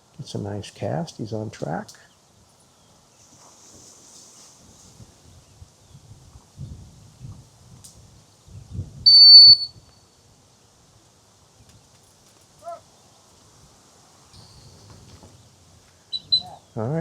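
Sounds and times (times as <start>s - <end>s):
high whistle blast: 9.0s - 9.8s.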